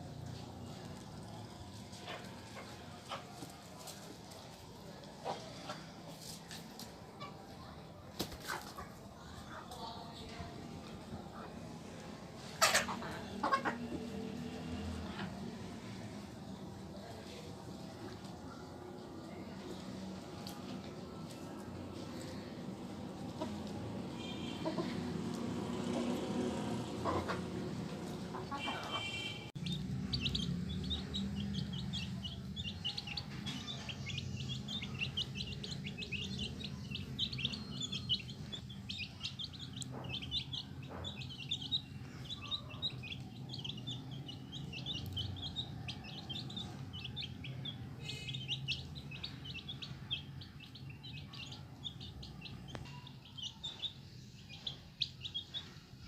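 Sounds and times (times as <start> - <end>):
chicks peeping: 12.4 - 18.4, 19.2 - 56.0.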